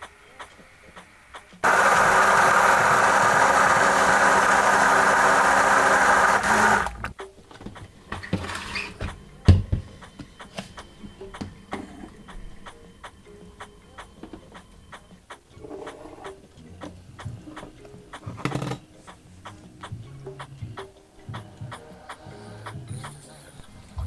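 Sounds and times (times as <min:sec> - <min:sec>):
blender motor running: 0:01.6 - 0:07.1.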